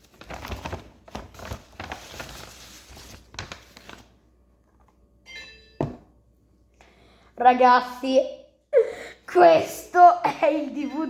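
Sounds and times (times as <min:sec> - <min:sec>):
packaging rustling and crackling: 0:00.0 - 0:04.2.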